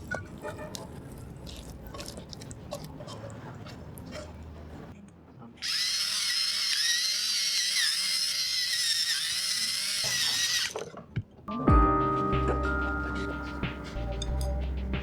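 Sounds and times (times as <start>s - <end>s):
small electric motor whining: 5.6s - 10.8s.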